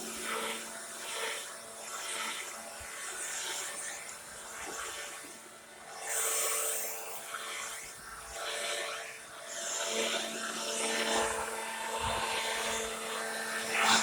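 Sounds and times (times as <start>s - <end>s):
leaf blower running: 9.7s - 14.0s.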